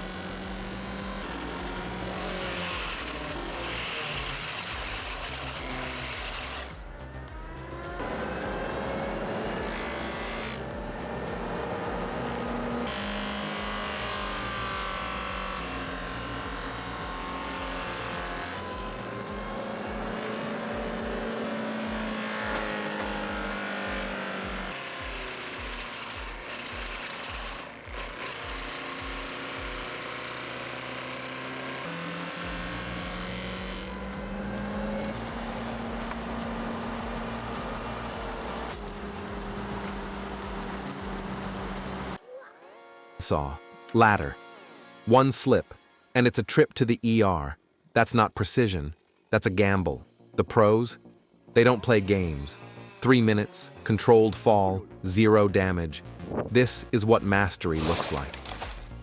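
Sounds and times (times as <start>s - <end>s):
dense machine noise: 0.0s - 42.2s
music with low beat: 0.0s - 42.2s, 56.0s - 59.0s.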